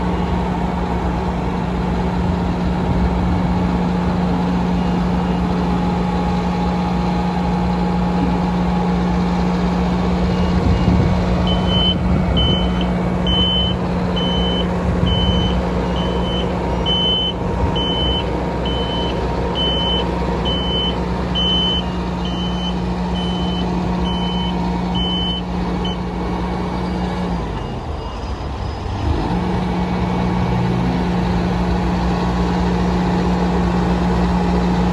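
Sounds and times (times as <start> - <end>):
diesel engine running: 0.0 - 34.9
warning alarm beeping: 9.9 - 26.0.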